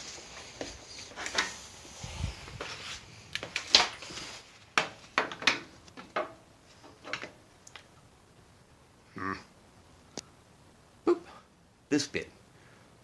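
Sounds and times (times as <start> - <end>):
hard parts clicking and knocking: 4.8 - 7.8.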